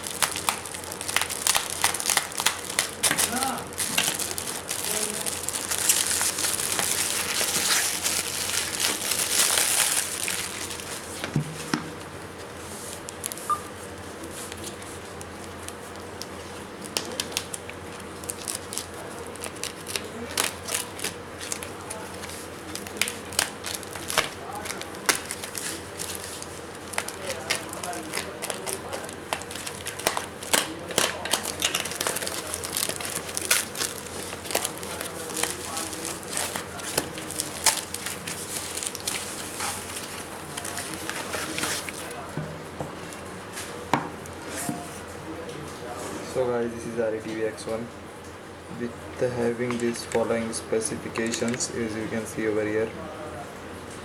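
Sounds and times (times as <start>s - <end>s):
packaging crinkling: 0.0s - 11.2s, 12.4s - 42.3s.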